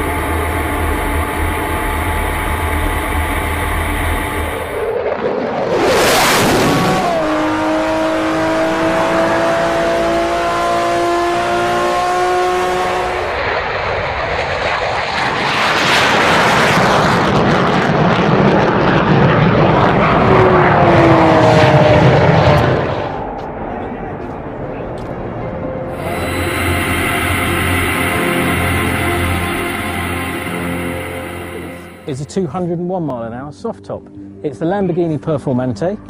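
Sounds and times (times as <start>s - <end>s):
noisy rush: 0.0s - 11.8s, 12.6s - 33.0s
engine tone sliding down: 0.0s - 13.5s, 19.4s - 32.4s.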